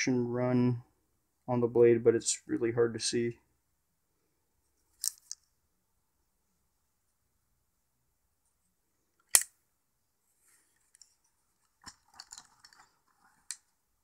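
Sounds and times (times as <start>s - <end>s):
soft rustling: 10.2s - 14.0s.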